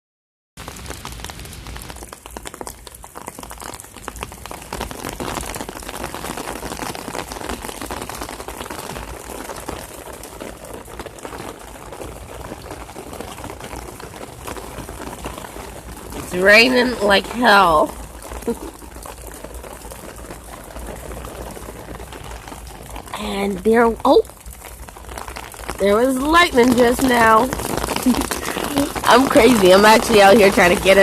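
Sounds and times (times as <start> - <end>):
heavy rain: 0.6 - 31.0.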